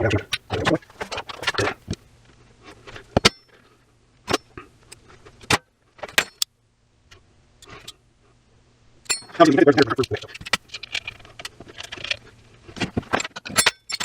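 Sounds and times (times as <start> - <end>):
metal terminals rattling and clinking: 6.2 - 6.5, 9.1 - 12.2, 13.1 - 14.0.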